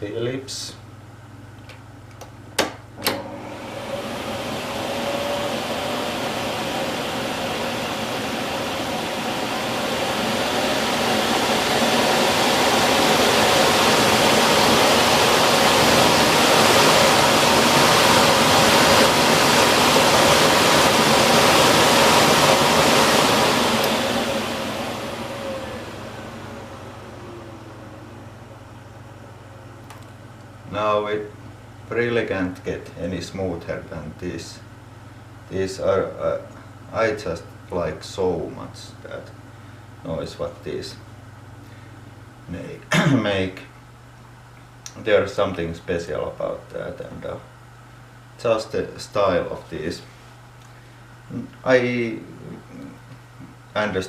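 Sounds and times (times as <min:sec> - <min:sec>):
vacuum cleaner switch clicks: 0:02.1 - 0:03.4, 0:23.8 - 0:24.0
vacuum cleaner running: 0:03.0 - 0:31.3.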